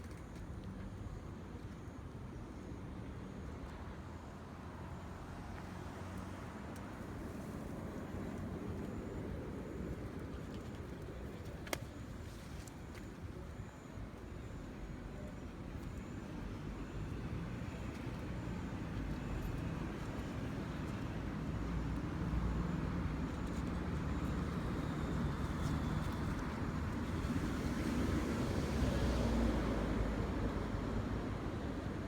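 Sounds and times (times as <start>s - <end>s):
traffic rumble: 2.3s - 32.0s.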